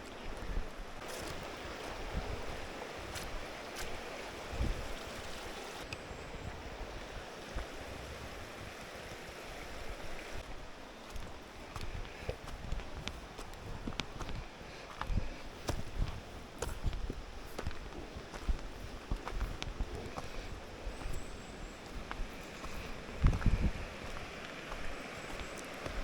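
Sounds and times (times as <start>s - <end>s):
water rushing over rocks: 1.0s - 6.0s, 6.7s - 10.5s, 22.4s - 26.0s.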